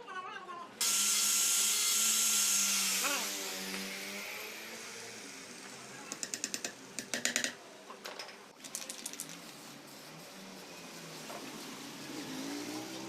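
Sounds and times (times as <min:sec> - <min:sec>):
power tool hiss: 0:00.8 - 0:05.9
ratchet wrench clicking: 0:06.1 - 0:07.6.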